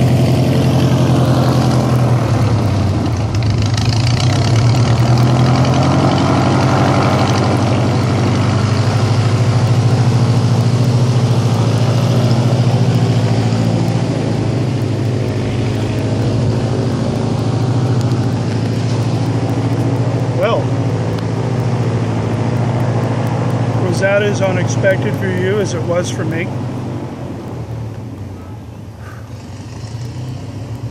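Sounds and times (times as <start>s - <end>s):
engine running with pulsing drone: 0.0s - 30.9s.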